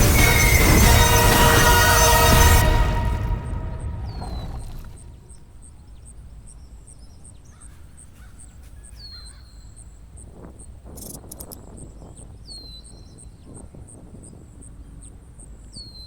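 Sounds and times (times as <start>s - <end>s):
low wind rumble: 0.0s - 5.3s
insect chirping: 10.9s - 11.6s.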